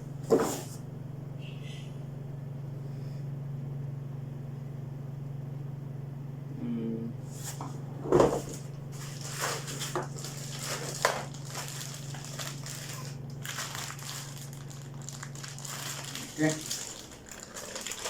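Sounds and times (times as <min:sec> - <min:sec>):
steady low hum: 0:00.0 - 0:18.0
plastic and paper crinkling: 0:08.3 - 0:18.0.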